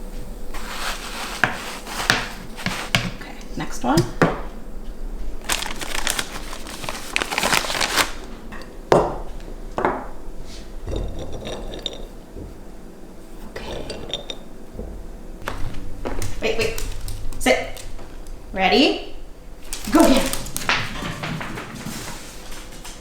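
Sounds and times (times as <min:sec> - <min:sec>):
rustling: 0:00.2 - 0:03.2, 0:04.7 - 0:08.6, 0:10.2 - 0:23.0
pans and utensils clattering: 0:05.5 - 0:12.6, 0:13.4 - 0:18.3, 0:19.6 - 0:23.0.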